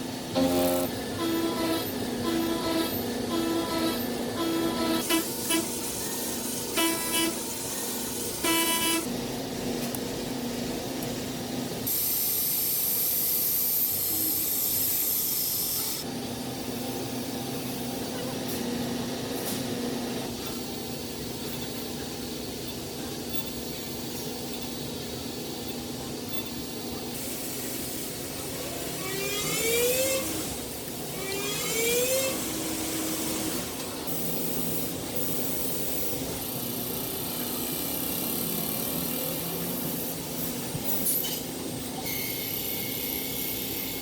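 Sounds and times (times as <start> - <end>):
industrial machine humming: 0.0 - 11.9, 27.1 - 44.0.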